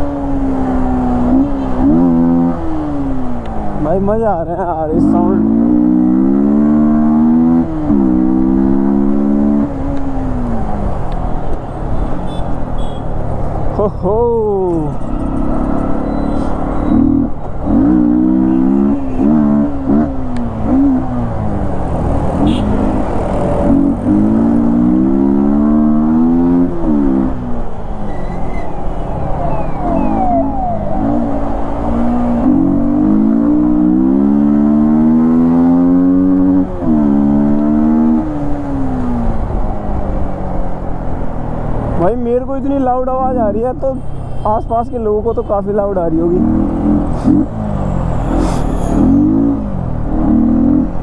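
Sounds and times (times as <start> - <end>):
motorcycle engine revving: 15.0 - 27.6, 28.4 - 38.3, 46.2 - 51.0.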